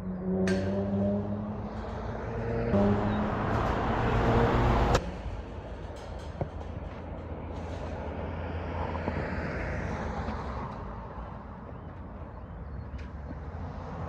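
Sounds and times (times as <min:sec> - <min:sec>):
vehicle passing: 0:00.0 - 0:05.1
distant traffic rumble: 0:00.0 - 0:14.0.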